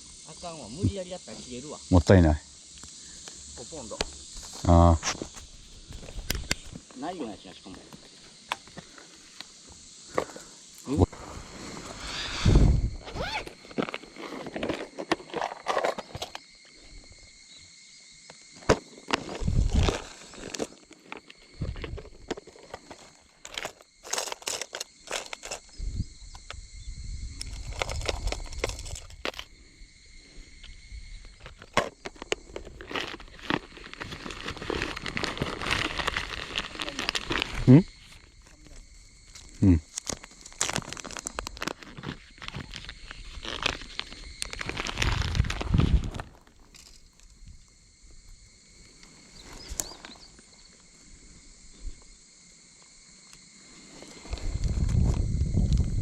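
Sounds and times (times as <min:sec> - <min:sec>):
wind rumbling on microphone: 0:11.1 - 0:13.5, 0:19.3 - 0:20.1, 0:21.5 - 0:22.3, 0:25.7 - 0:29.3, 0:42.4 - 0:46.4, 0:54.2 - 0:56.0
crackling and rustling: 0:18.6 - 0:26.6, 0:27.3 - 0:29.5, 0:31.2 - 0:47.7.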